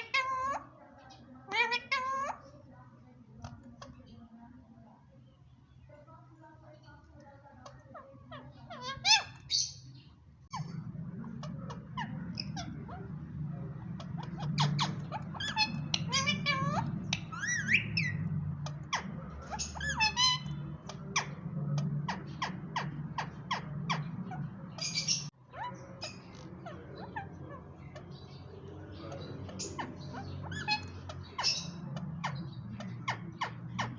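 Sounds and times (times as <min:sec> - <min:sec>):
parrot chattering and squawking: 0:00.0 - 0:02.6, 0:07.6 - 0:33.9
steady low hum: 0:02.6 - 0:33.9.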